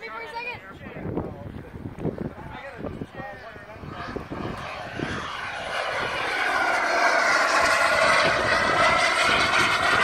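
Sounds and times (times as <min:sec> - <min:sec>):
model jet turbine whining: 0:02.6 - 0:10.0.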